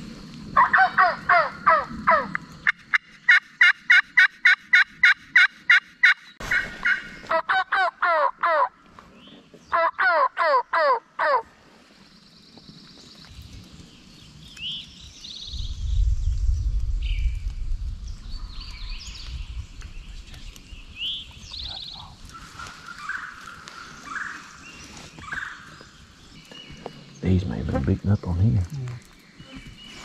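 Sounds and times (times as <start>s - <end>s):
turkey yelping: 0.6s - 2.3s, 3.3s - 8.7s, 9.7s - 11.4s
low rumble: 15.3s - 22.0s.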